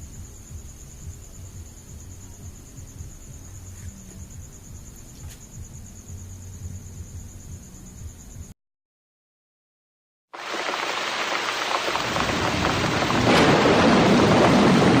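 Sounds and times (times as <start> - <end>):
heavy rushing rain: 10.4 - 15.0
thunder: 10.4 - 15.0.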